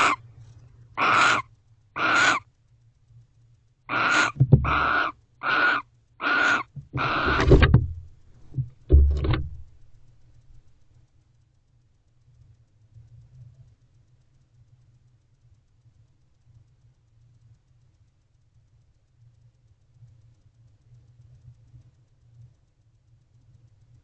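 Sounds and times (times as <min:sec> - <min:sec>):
owls hissing screeches: 0:00.0 - 0:00.2, 0:01.0 - 0:02.5, 0:03.9 - 0:07.6
deep thumps on wooden box: 0:04.4 - 0:04.8, 0:06.8 - 0:09.7.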